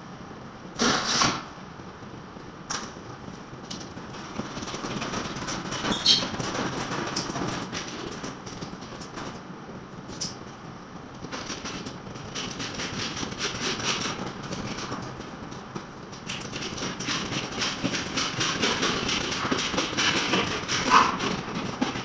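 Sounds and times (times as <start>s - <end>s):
building repair clatter: 11.2s - 22.0s.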